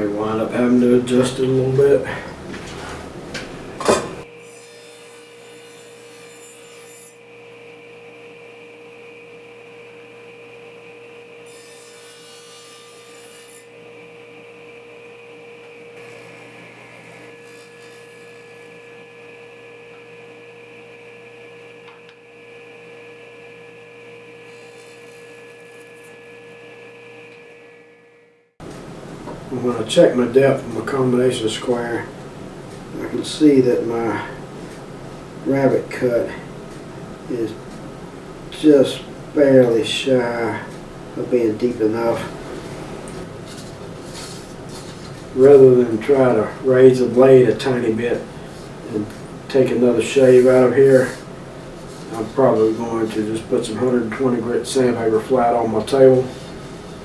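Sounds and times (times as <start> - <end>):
table saw humming: 0.0 - 8.1, 9.6 - 57.0
saw blade cutting plywood: 16.0 - 19.0, 24.4 - 26.4, 38.6 - 53.2.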